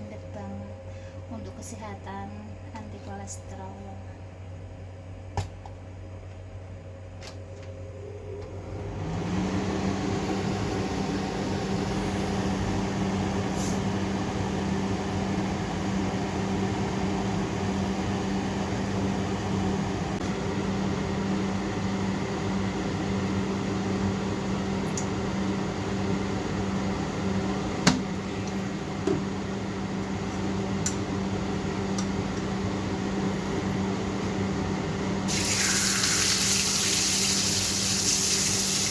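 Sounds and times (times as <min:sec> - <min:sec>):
motor hum with hiss: 0:07.6 - 0:20.2, 0:35.3 - 0:38.9.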